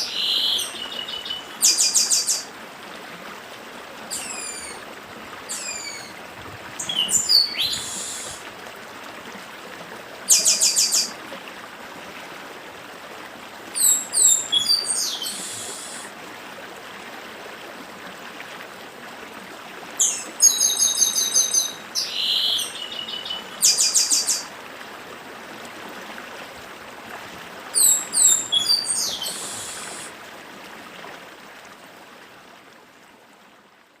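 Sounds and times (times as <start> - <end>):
bird whistles and trills: 0.0 - 2.5, 4.1 - 4.8, 5.5 - 6.2, 6.8 - 8.4, 13.8 - 16.0, 20.0 - 24.4, 27.8 - 30.1
stream rushing: 0.0 - 34.0.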